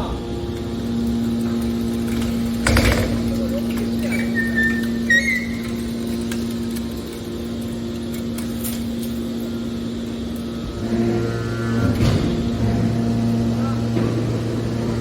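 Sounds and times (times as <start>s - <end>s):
baler motor and pump humming: 0.0s - 15.0s
deeper machine tone: 9.4s - 15.0s.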